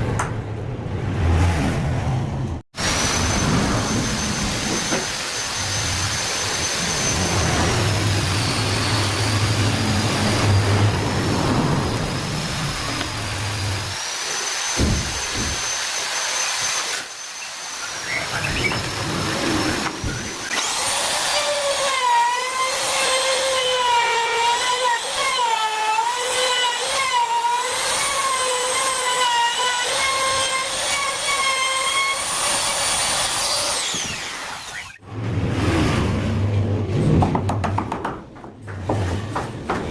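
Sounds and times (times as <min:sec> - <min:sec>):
high steady whine: 0:02.8 - 0:13.9
electric trimmer cutting wood: 0:02.8 - 0:35.0.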